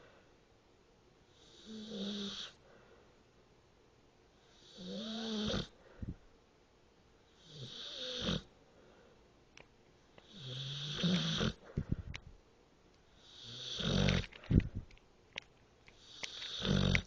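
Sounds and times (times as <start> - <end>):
pet snoring: 1.3 - 2.6, 4.4 - 5.8, 7.3 - 8.5, 10.2 - 11.9, 13.2 - 14.6, 16.0 - 17.0.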